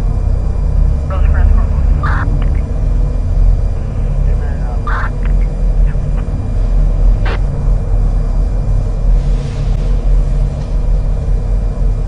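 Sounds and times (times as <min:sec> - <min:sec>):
low radio rumble: 0:00.0 - 0:12.0
noisy radio burst: 0:01.1 - 0:02.8, 0:03.8 - 0:06.5, 0:07.1 - 0:07.5.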